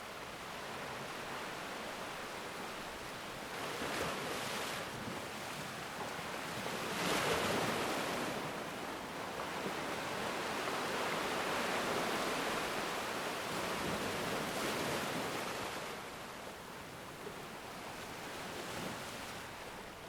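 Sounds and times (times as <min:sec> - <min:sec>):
waves breaking: 0:00.1 - 0:20.0.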